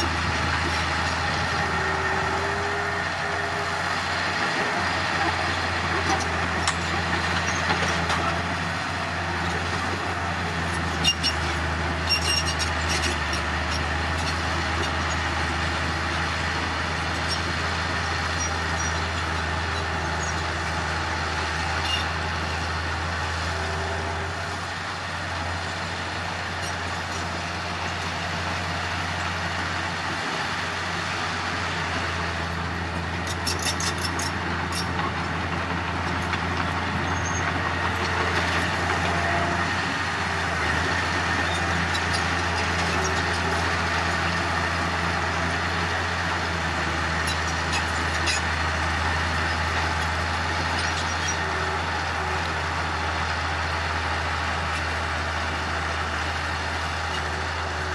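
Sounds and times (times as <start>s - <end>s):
diesel engine droning: 0.0s - 57.9s.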